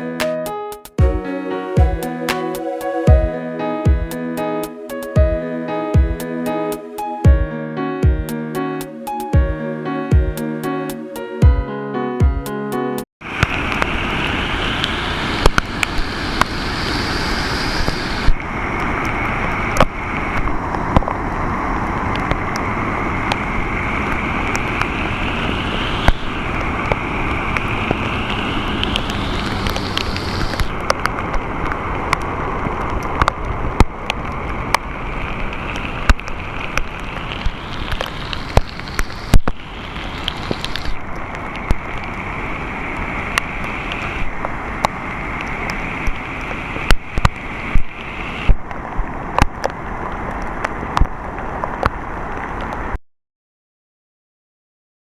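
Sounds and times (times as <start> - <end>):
heavy rain: 1.0 - 7.1, 13.2 - 53.0
rushing river: 1.1 - 7.4, 13.2 - 53.0
raindrops tapping: 13.2 - 52.8.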